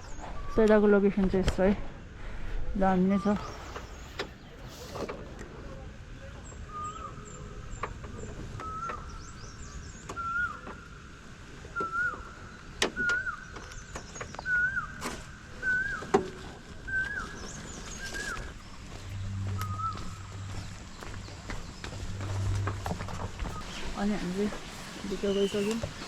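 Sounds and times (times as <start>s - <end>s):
bird whistled call: 6.6s - 7.6s, 8.6s - 10.7s, 11.7s - 16.2s, 16.9s - 24.5s
high bird chirps: 16.9s - 26.0s.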